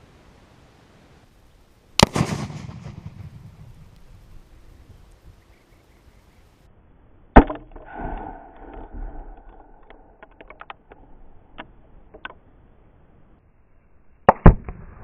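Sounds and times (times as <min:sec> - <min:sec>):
explosive blast: 0:02.0 - 0:04.0
scatter of sharp clicks: 0:02.0 - 0:04.1, 0:07.4 - 0:12.4
rumbling: 0:02.0 - 0:05.5, 0:07.4 - 0:12.4.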